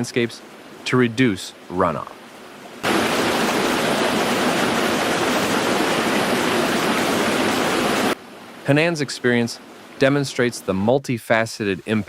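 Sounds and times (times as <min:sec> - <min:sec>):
fast-flowing water rushing: 0:02.6 - 0:10.8.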